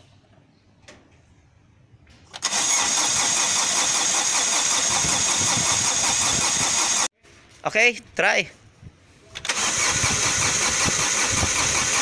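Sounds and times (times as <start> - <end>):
starter motor cranking engine: 2.3 - 7.1, 9.4 - 12.0.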